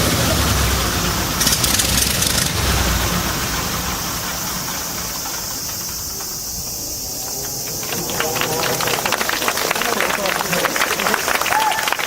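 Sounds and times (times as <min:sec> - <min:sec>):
aircraft radial engine running: 0:00.0 - 0:11.4.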